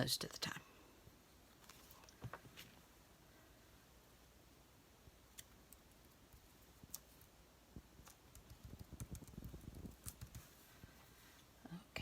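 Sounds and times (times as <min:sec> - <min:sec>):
paper cut-outs clicking and tapping: 0:08.0 - 0:10.5.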